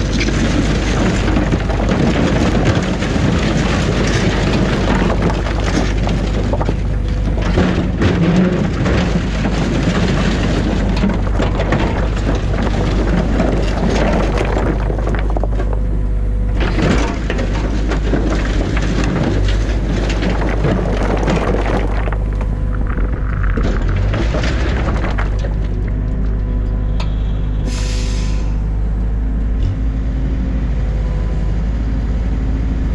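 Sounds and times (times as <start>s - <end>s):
stones clattering against bucket: 0.0s - 16.0s, 16.6s - 26.0s
excavator engine running: 0.0s - 32.9s.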